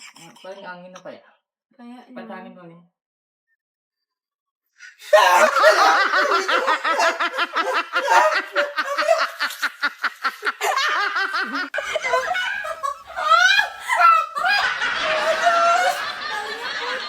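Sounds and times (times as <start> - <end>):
person giggling: 5.2 - 9.6, 11.4 - 17.0.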